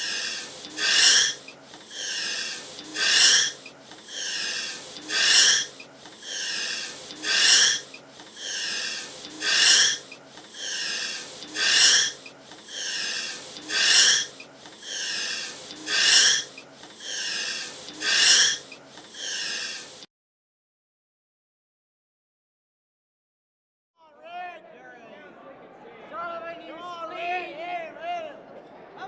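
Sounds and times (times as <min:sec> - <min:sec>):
heavy rasping breathing: 0:00.0 - 0:20.1.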